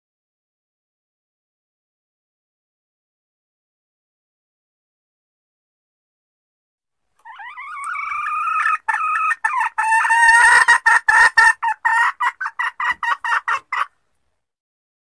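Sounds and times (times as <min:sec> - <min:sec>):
hen clucking: 0:07.2 - 0:14.0
junglefowl hen calling: 0:07.2 - 0:14.0.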